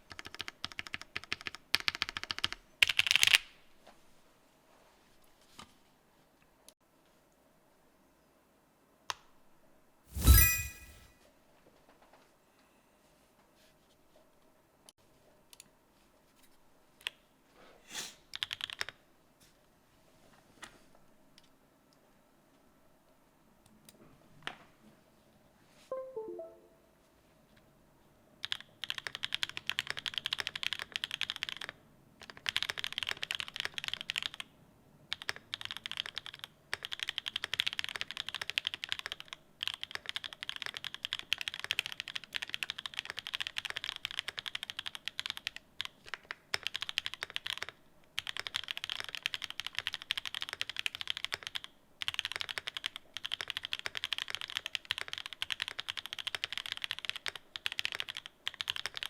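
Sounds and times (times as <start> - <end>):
mechanical keyboard typing: 0.0 - 3.4, 18.3 - 19.0, 28.4 - 34.5, 35.1 - 59.0.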